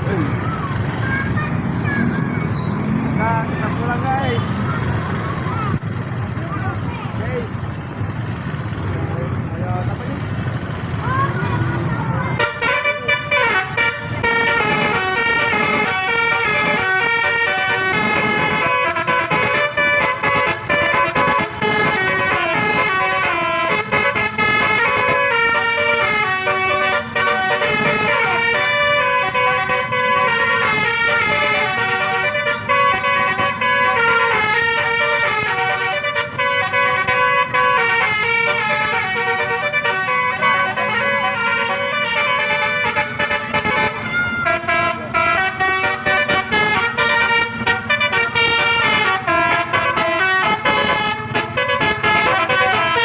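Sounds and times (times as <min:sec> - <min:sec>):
musical bus horn melody: 0:12.3 - 0:53.0.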